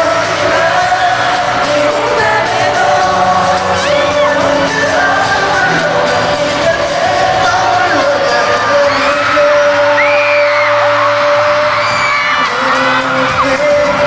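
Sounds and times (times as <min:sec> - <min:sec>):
live pop music with singing: 0:00.0 - 0:14.0
crowd screaming: 0:03.1 - 0:06.3, 0:07.1 - 0:14.0.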